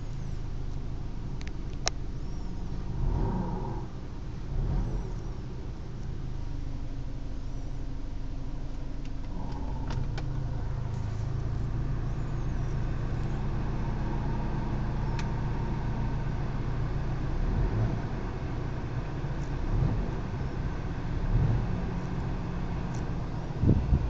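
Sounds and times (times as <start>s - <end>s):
faint whine: 0.0s - 17.4s
car engine humming: 0.0s - 24.0s.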